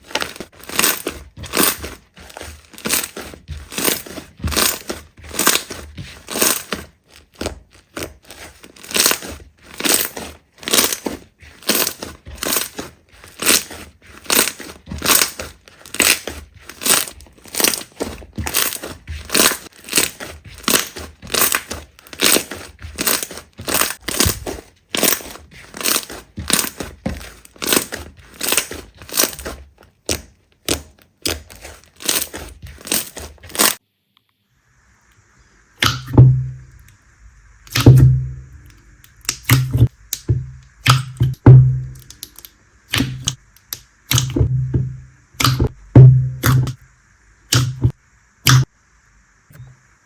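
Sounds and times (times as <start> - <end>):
slime squeezed with crackling pops: 2.8 - 33.8, 35.8 - 37.0, 37.6 - 46.9, 47.5 - 48.7
deep thuds: 35.9 - 36.8, 37.7 - 38.8, 39.4 - 42.0, 44.1 - 46.8.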